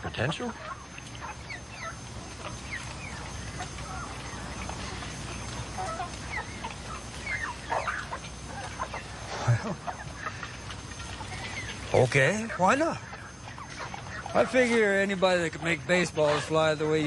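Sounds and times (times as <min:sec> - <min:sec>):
chickens clucking: 0:00.0 - 0:17.0
low background hum: 0:00.0 - 0:17.0.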